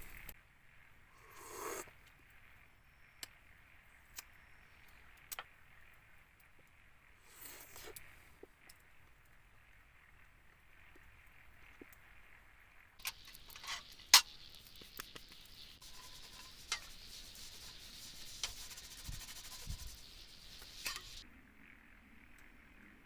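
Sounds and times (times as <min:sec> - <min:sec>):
sharp clicks: 0:13.0 - 0:15.8
fabric rustling and rubbing: 0:15.8 - 0:21.2.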